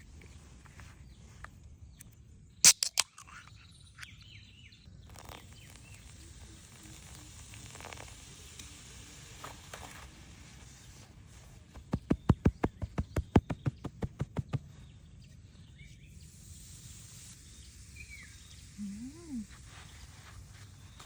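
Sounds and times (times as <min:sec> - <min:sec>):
low outdoor background: 0:00.0 - 0:21.0
sharp knocks: 0:11.8 - 0:14.6.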